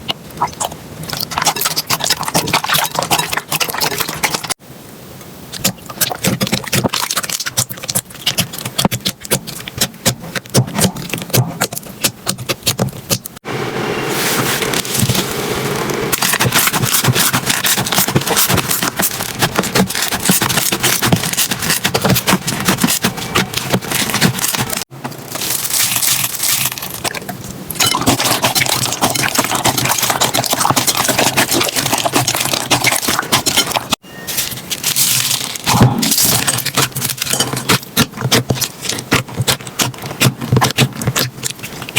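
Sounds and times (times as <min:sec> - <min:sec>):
slime crackling and popping: 0:16.1 - 0:41.9.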